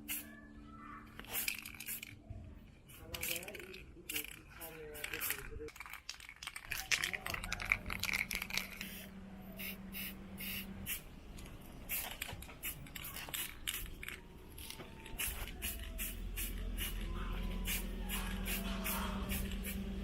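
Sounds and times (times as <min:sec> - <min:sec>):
spray can hissing: 0:00.0 - 0:00.3, 0:01.2 - 0:02.2, 0:08.0 - 0:11.1, 0:11.7 - 0:14.0, 0:14.6 - 0:20.0.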